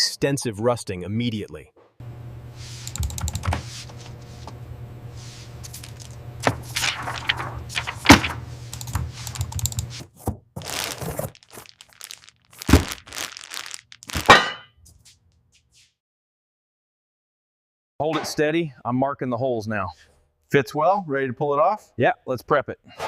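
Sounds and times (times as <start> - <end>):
steady low hum: 2.0 - 10.0.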